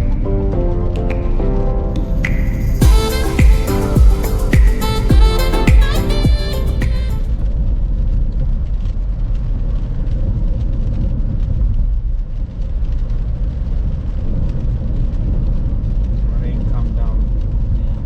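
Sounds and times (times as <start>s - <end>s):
background music: 0.0s - 7.4s.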